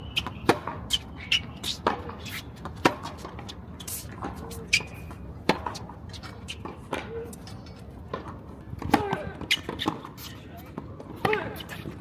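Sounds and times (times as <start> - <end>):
shoe squeaks and scuffs: 0.0 - 7.9, 9.4 - 10.7
tennis balls struck with rackets: 0.2 - 3.5, 5.4 - 5.9, 8.1 - 10.0, 11.0 - 11.6.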